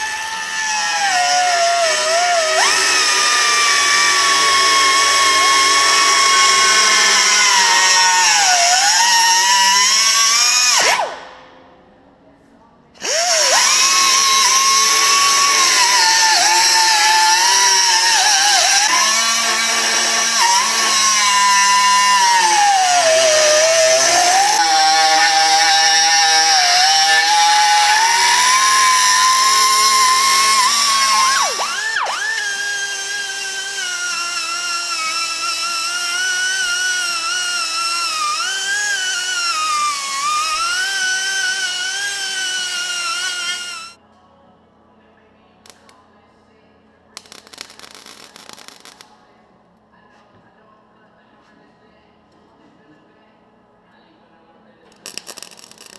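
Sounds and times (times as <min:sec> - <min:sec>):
power tool motor whine: 0:00.0 - 0:11.2, 0:13.0 - 0:44.0.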